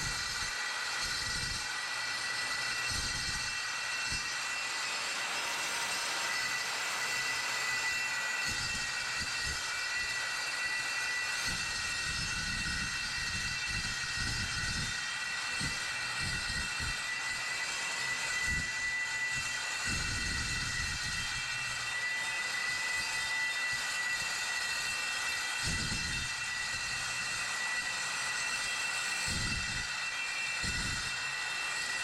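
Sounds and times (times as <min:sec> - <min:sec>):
circular saw cutting steel: 0:00.0 - 0:32.0.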